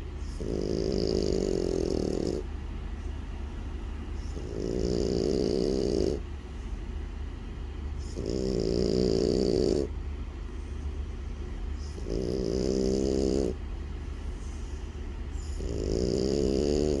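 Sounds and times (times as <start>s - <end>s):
dog snoring: 0.0s - 2.5s, 4.2s - 6.2s, 8.0s - 9.9s, 10.6s - 17.0s.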